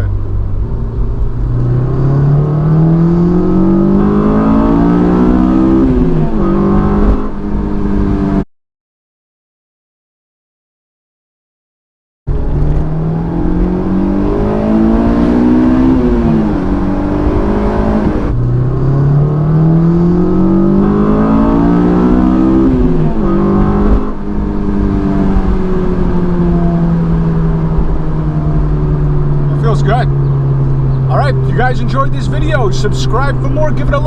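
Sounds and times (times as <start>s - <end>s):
car engine revving through gears: 0.0s - 8.4s, 12.3s - 34.0s.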